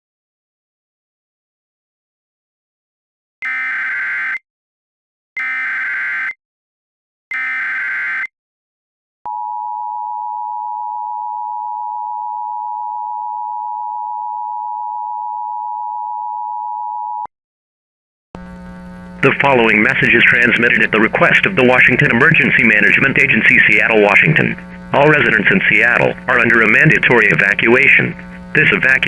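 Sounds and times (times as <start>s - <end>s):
screechy data tone bursts: 3.4s - 4.4s, 5.4s - 6.4s, 7.3s - 8.3s.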